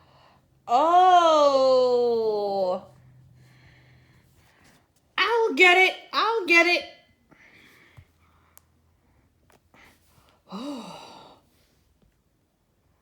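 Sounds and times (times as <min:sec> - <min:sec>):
person saying oh: 0:00.7 - 0:02.8.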